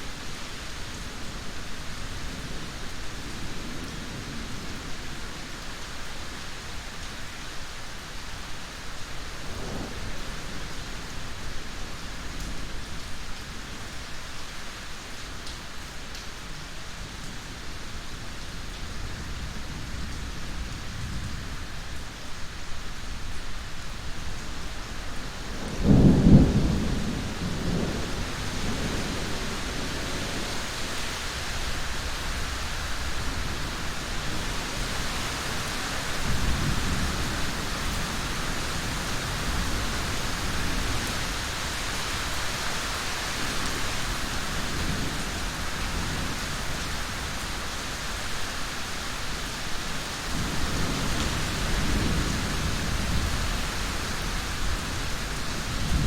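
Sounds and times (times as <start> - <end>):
steady rain falling: 0.0 - 56.0
thunder rumbling: 25.4 - 42.4.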